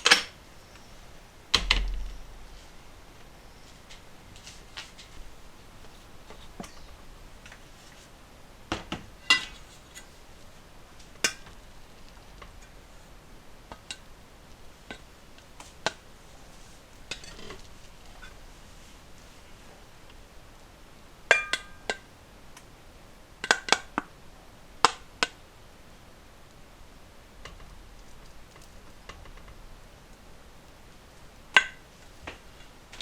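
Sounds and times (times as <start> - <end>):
dishes and cutlery clinking: 8.7 - 10.1.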